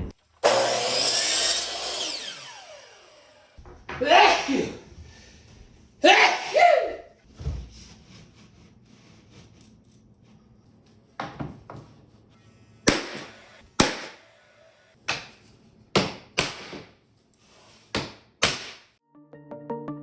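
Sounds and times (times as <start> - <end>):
hammer nailing into wood: 12.9 - 14.2, 16.0 - 17.0
background music: 19.0 - 20.0.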